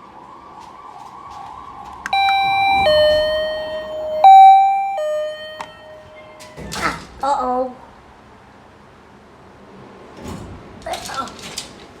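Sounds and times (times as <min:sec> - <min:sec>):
elevator two-tone chime: 0:02.1 - 0:06.4.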